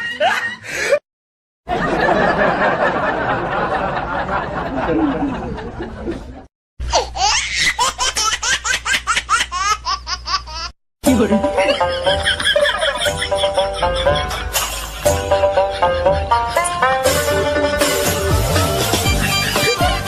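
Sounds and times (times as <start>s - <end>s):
group of people laughing: 0.0s - 1.0s, 1.7s - 6.5s, 11.2s - 19.9s.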